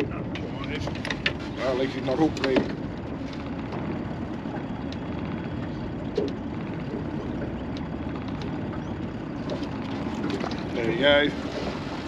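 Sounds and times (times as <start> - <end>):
wind buffeting microphone: 0.0 - 12.0
faint clicks: 4.5 - 5.1, 7.3 - 10.6.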